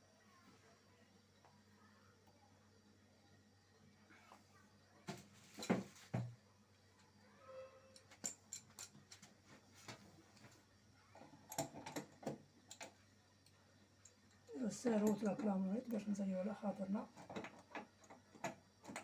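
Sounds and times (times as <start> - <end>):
metal tap and tools clicking: 7.9 - 10.5, 11.2 - 14.4, 17.2 - 19.0.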